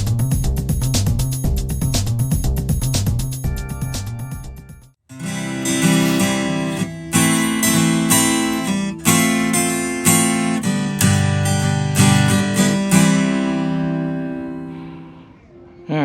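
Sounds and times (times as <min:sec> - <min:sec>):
acoustic guitar strumming: 0:05.1 - 0:15.4.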